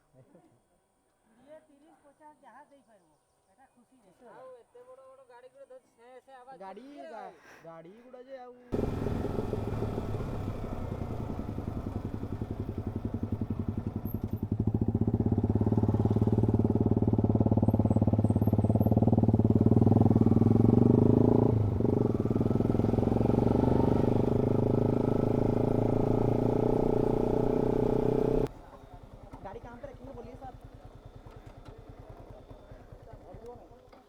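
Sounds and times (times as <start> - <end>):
motorcycle engine running: 8.7 - 34.0.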